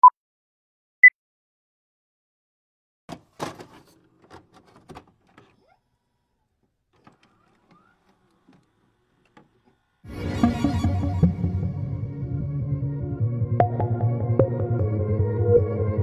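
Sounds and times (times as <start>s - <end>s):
sharp clicks and knocks: 3.1s - 5.8s, 7.0s - 10.1s
music: 10.1s - 16.0s.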